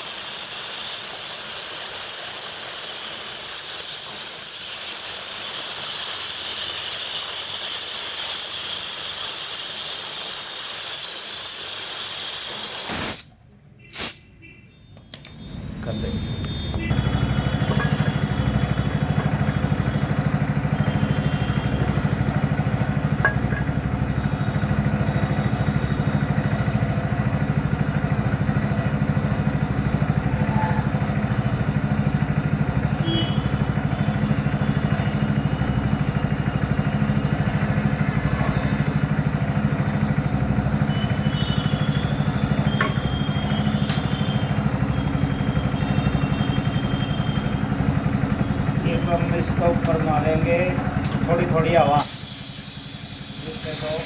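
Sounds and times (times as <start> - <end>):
motorcycle engine idling: 15.1 - 53.8.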